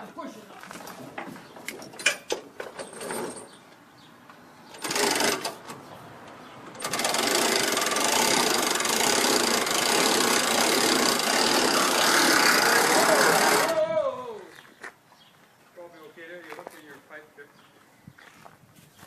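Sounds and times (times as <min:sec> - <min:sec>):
motor running with mechanical rattle: 0:04.8 - 0:05.6, 0:06.7 - 0:13.7.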